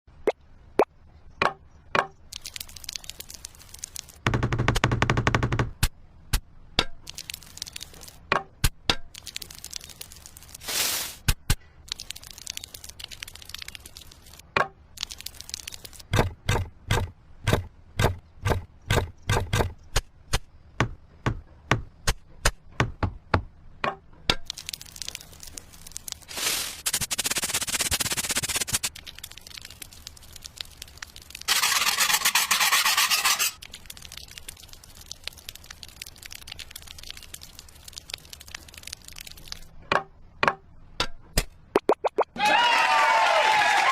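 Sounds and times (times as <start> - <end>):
small bricks tapping and clicking: 6.8 - 10.6, 11.2 - 26.3
scraping: 31.5 - 33.6.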